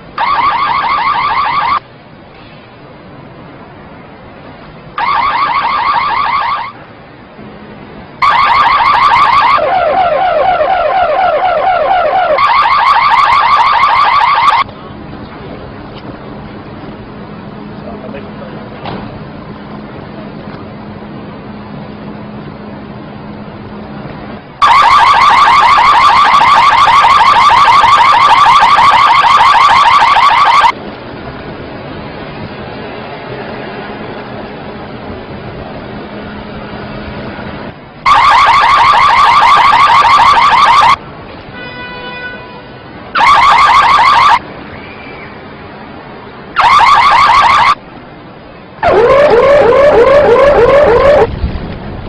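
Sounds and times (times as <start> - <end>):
steady background noise: 0.0 - 52.0
electronic alarm whooping: 0.2 - 1.8, 5.0 - 6.8, 8.2 - 14.6, 24.6 - 30.8, 38.1 - 41.0, 43.2 - 44.4, 46.6 - 47.8, 48.8 - 51.3.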